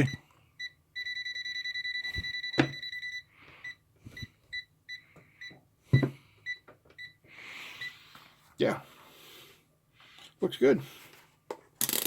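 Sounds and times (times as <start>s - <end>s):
voltage detector beeping: 0.0s - 7.2s.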